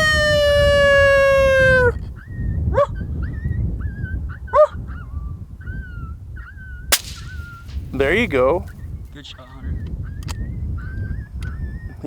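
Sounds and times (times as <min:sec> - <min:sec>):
faint yips and howls: 0:00.0 - 0:06.9
suppressed rifle shot: 0:06.9 - 0:08.3.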